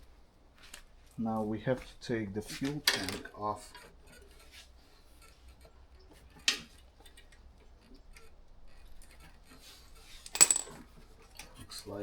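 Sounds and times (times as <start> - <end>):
light handling noises: 0.5 - 8.2.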